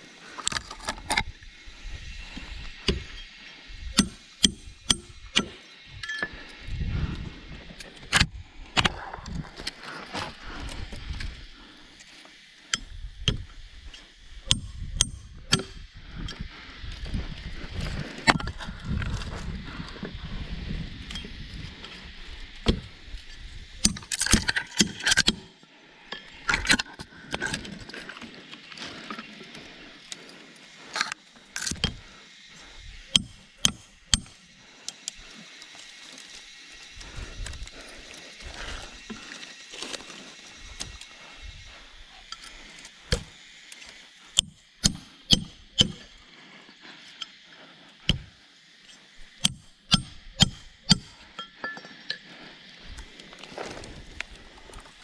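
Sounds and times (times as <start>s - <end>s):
sharp knocks and clinks: 49.4s - 52.3s.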